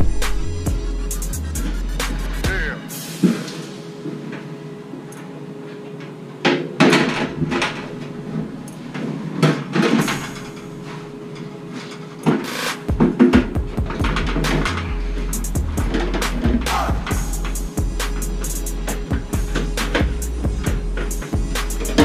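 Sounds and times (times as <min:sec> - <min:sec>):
steady low hum: 0:00.0 - 0:22.0
hard parts knocking and clunking: 0:06.4 - 0:22.0.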